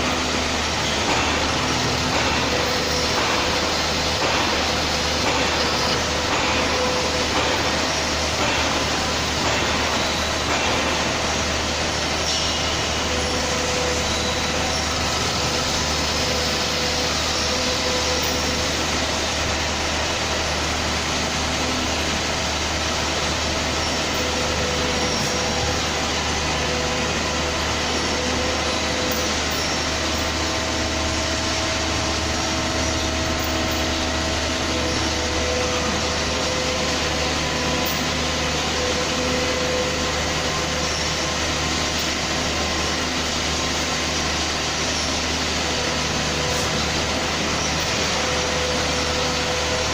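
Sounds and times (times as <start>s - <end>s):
machine humming: 0.0s - 49.9s
faint machine tone: 23.6s - 31.0s.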